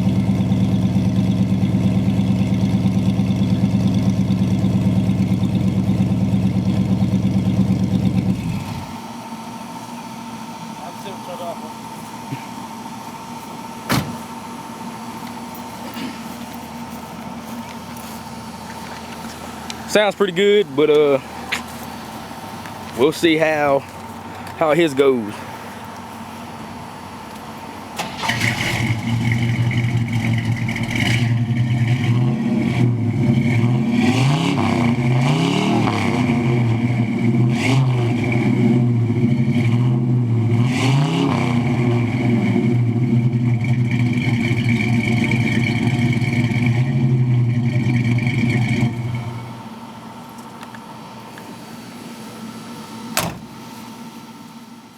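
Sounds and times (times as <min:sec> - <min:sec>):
car engine revving: 0:00.0 - 0:09.0, 0:26.7 - 0:49.8.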